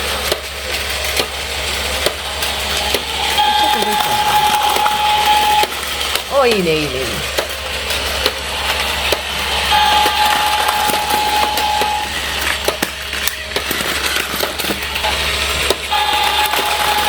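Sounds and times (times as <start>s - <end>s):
toy train clattering on plastic track: 0.0s - 17.0s
electronic held tone: 3.3s - 5.7s.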